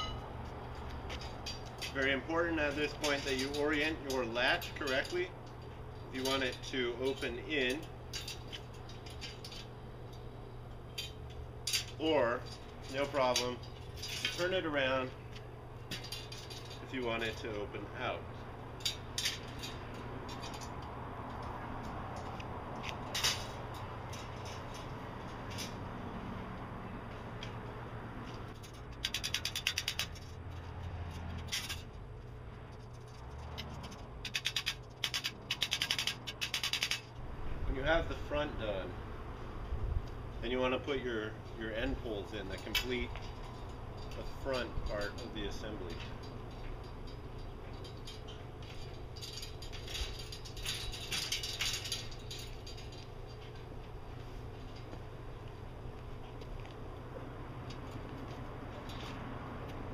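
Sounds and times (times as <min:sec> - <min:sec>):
metal poles rattling: 0:00.0 - 0:26.0, 0:28.2 - 0:38.9, 0:40.2 - 0:55.4
steady low rumble: 0:36.9 - 0:59.9.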